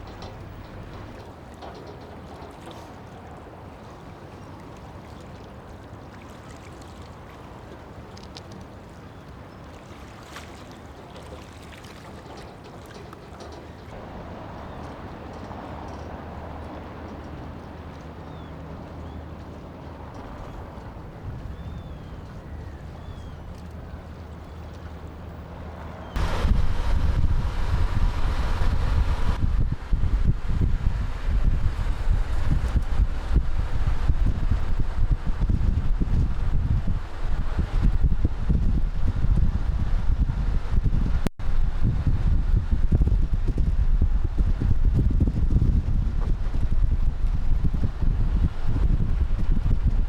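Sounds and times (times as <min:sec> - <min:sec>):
boat engine hum: 0:00.0 - 0:50.0
water washing: 0:24.4 - 0:35.7.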